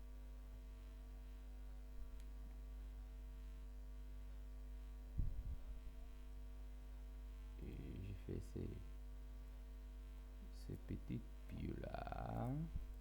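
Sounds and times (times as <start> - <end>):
electrical mains hum: 0.0 - 13.0
brief low thump: 5.2 - 5.6.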